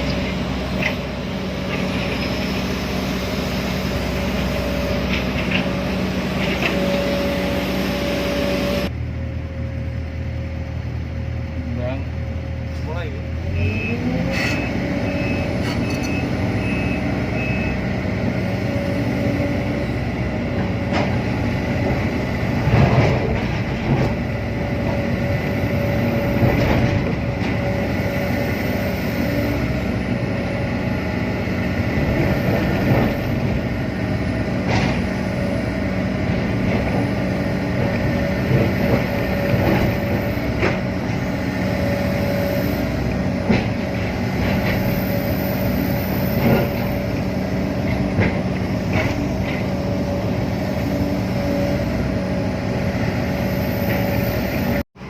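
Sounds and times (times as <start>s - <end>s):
excavator diesel engine running: 0.0s - 55.0s
short beeps: 13.6s - 17.8s.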